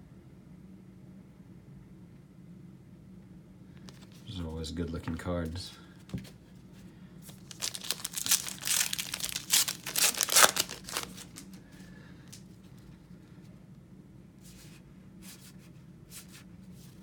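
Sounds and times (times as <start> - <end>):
foil wrapper tearing and crinkling: 7.3 - 11.6.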